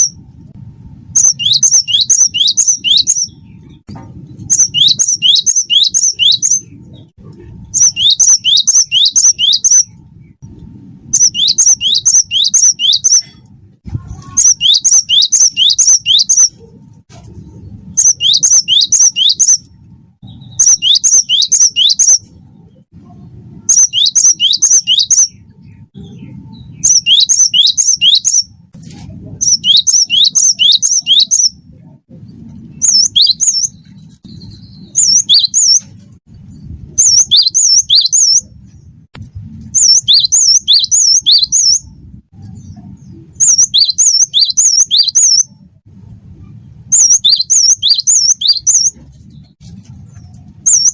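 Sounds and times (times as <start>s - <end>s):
bird singing high whistles: 1.2s - 3.4s, 4.5s - 6.7s, 7.8s - 9.9s, 11.2s - 13.3s, 14.4s - 16.6s, 18.0s - 19.7s, 20.3s - 22.2s, 23.7s - 25.4s, 26.6s - 28.5s, 29.4s - 31.6s, 32.8s - 35.8s, 37.0s - 38.5s, 39.8s - 41.8s, 43.4s - 45.5s, 46.9s - 49.0s.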